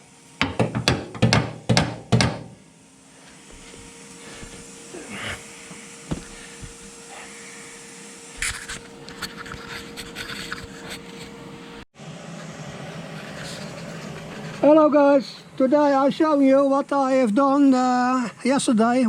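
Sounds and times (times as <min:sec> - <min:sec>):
workshop hum: 0:00.0 - 0:17.9
knock: 0:00.4 - 0:02.5
rustle of handling: 0:03.2 - 0:07.5.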